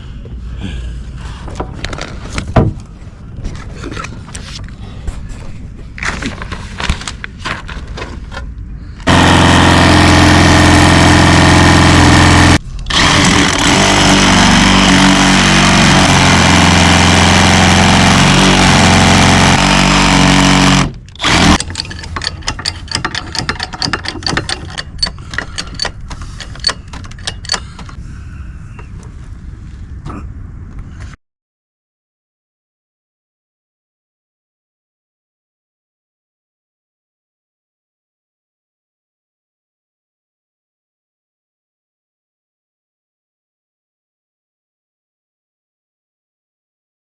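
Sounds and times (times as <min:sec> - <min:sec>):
motorized power tool running: 0:09.0 - 0:21.7
knocks and clatter of work: 0:20.7 - 0:28.0.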